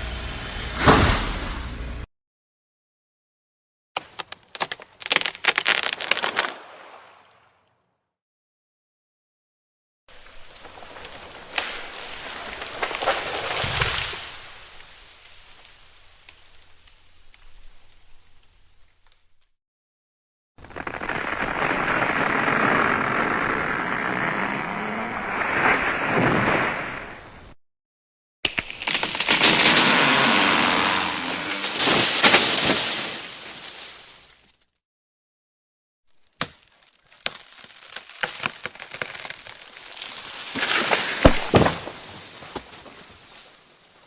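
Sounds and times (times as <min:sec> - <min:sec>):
wood cracking and snapping: 0:04.0 - 0:06.6, 0:10.3 - 0:14.3, 0:28.5 - 0:32.9, 0:36.2 - 0:43.6
tree falling: 0:04.0 - 0:07.0, 0:10.1 - 0:18.4, 0:20.7 - 0:26.8, 0:28.5 - 0:34.4, 0:36.2 - 0:44.0.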